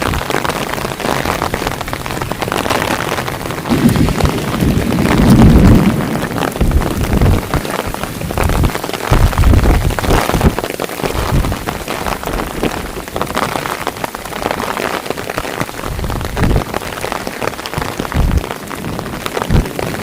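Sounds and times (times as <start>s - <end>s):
heavy rain pouring: 0.0s - 20.0s
low thumps: 3.6s - 7.7s.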